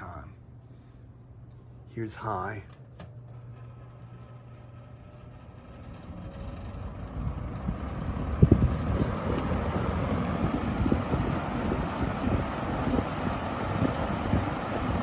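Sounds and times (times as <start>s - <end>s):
box fan rushing air: 0.5s - 15.0s
air buffeting microphone: 6.2s - 15.0s.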